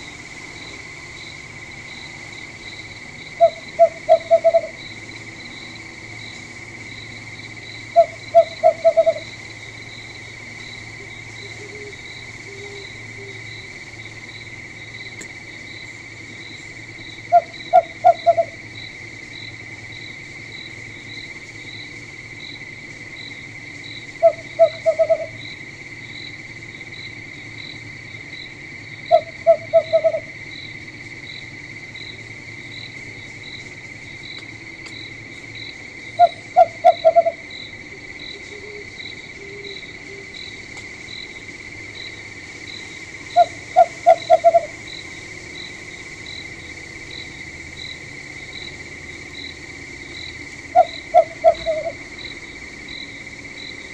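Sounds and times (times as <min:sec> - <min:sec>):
crickets chirping: 0:00.0 - 0:53.9
owl hooting: 0:00.7 - 0:05.1, 0:07.4 - 0:10.2, 0:10.9 - 0:14.4, 0:17.1 - 0:18.8, 0:24.1 - 0:25.6, 0:29.0 - 0:30.6, 0:36.0 - 0:40.6, 0:41.4 - 0:53.9.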